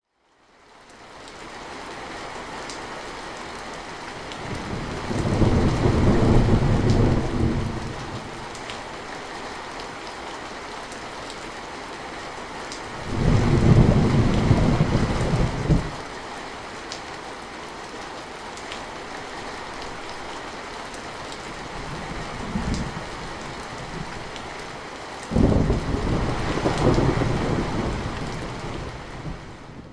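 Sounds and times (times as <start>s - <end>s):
steady rain: 0.0s - 29.9s
thunder rolling: 4.5s - 8.4s, 13.0s - 16.0s, 25.3s - 29.9s.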